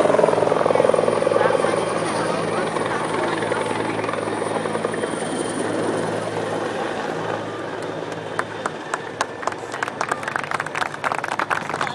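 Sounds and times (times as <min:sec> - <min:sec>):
aircraft engine hum and whine: 0:00.0 - 0:11.9
handclaps: 0:07.8 - 0:11.9.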